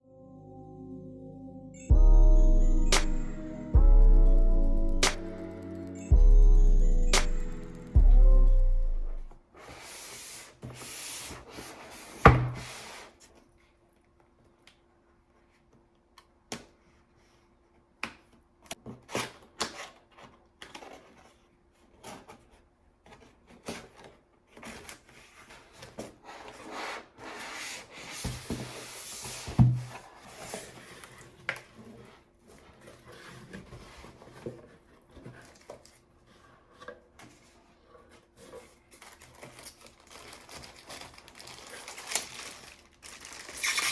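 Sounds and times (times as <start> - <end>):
cardboard packaging scraping and rustling: 9.6 - 13.6, 18.8 - 43.9.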